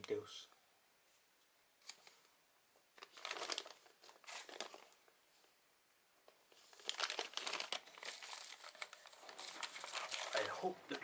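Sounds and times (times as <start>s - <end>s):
plastic packaging crinkling: 2.9s - 5.1s, 6.5s - 11.0s.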